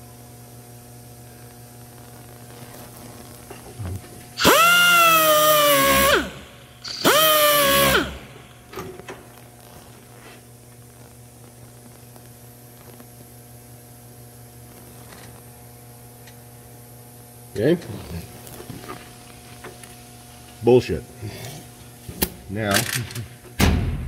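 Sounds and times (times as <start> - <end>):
electrical hum: 0.0 - 24.0
power drill running: 4.4 - 8.4.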